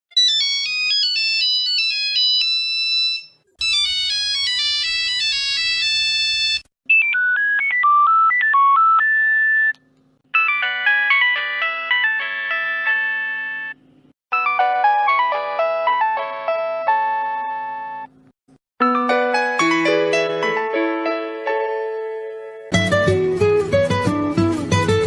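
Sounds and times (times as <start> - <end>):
electronic phone ringtones: 0.2 - 9.7, 10.4 - 13.8.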